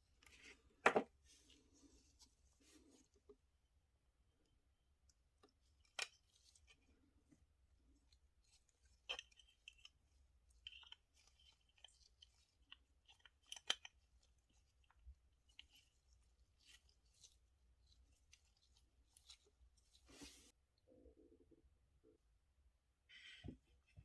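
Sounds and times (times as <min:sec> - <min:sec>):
small parts clicking and scratching: 0:05.4 - 0:20.5.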